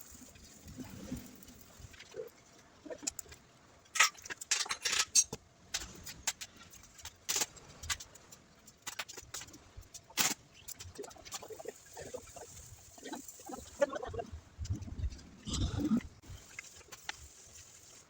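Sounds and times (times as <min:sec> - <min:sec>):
metal tools clinking: 0:03.9 - 0:05.4.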